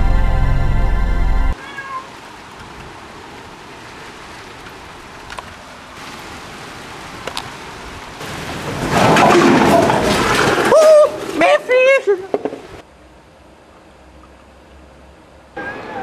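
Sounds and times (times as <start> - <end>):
steady rain hiss: 0.0 - 16.0.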